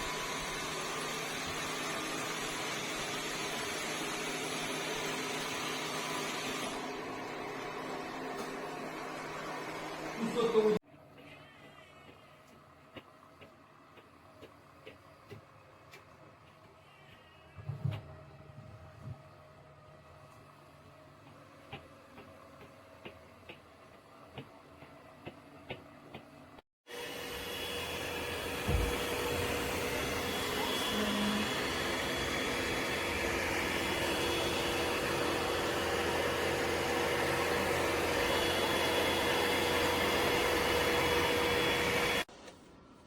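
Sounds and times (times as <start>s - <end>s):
robot vacuum suction running: 0.0s - 10.8s, 26.9s - 42.3s
low thump: 28.6s - 29.1s.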